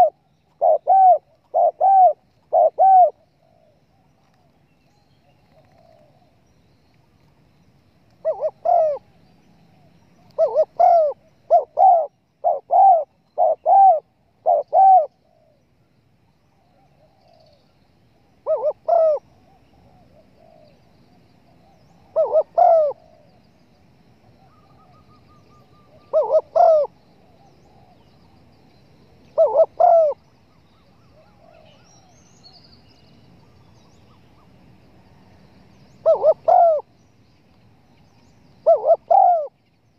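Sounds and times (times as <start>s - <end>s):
dove cooing: 0.0s - 3.8s, 8.2s - 9.1s, 10.4s - 15.6s, 18.4s - 20.8s, 22.0s - 23.4s, 24.7s - 28.0s, 29.3s - 30.2s, 36.0s - 36.9s, 38.6s - 39.6s.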